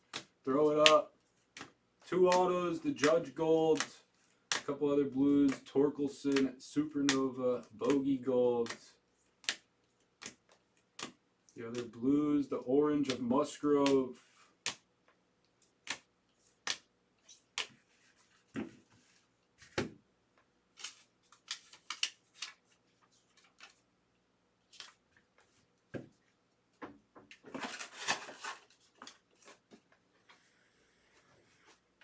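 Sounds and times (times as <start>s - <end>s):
cards rustling: 0.0s - 12.2s, 20.7s - 23.8s, 24.7s - 25.6s
cards clicking on a table: 1.6s - 4.7s, 9.4s - 11.9s, 15.9s - 17.8s.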